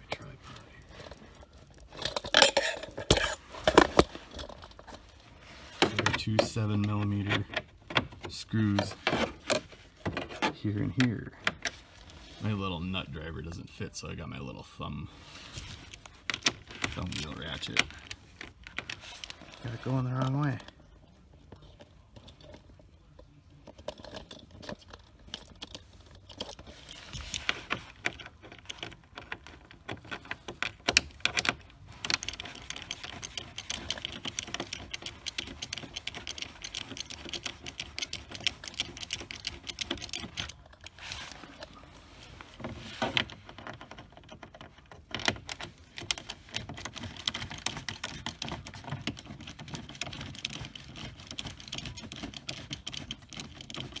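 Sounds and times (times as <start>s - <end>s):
thumb-wheel ratchet clicking: 30.9s - 40.6s, 45.2s - 54.0s.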